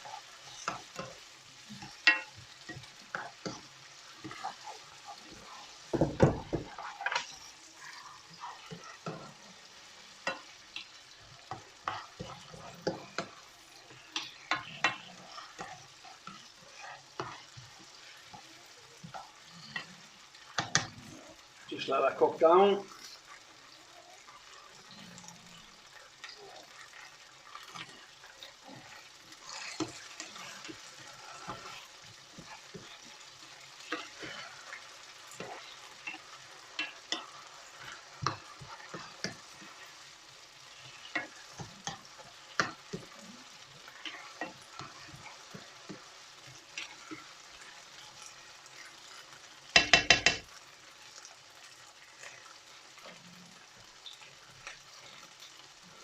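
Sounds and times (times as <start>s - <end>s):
onion sizzling in oil: 0.0s - 56.0s
utensil clicking against pan: 1.8s - 4.5s, 20.6s - 20.9s, 40.8s - 43.2s, 49.7s - 50.5s.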